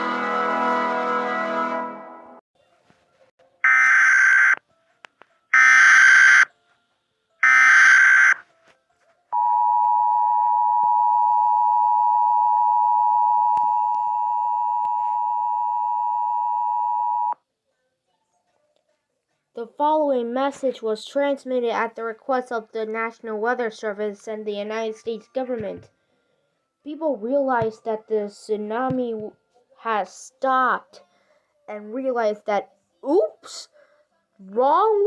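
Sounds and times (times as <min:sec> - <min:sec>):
music: 0:00.0 - 0:03.7, 0:04.6 - 0:05.6, 0:06.4 - 0:09.4, 0:17.4 - 0:35.0
screechy data bursts: 0:07.4 - 0:08.4.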